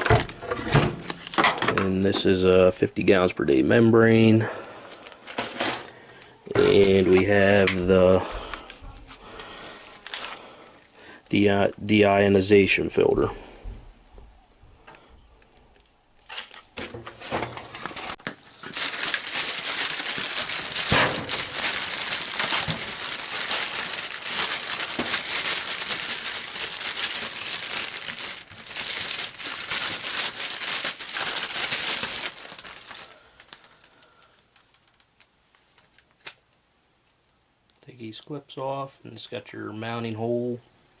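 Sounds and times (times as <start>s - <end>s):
plastic packaging crinkling: 0.0s - 1.8s, 6.6s - 10.9s, 15.7s - 36.4s.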